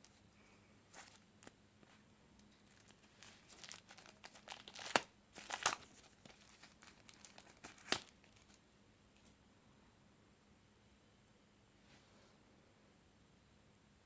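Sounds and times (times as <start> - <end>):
packaging rustling and crinkling: 0.9 - 8.6
sharp packaging crackles: 2.4 - 8.6.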